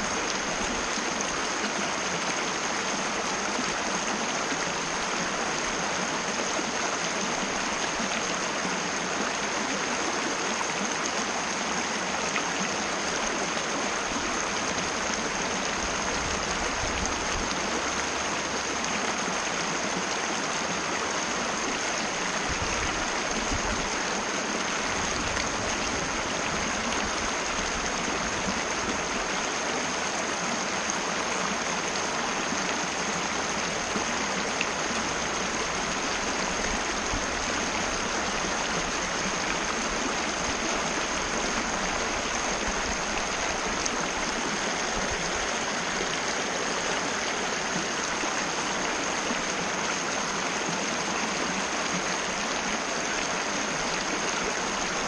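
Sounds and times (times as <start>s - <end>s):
mountain river rushing: 0.0s - 55.0s.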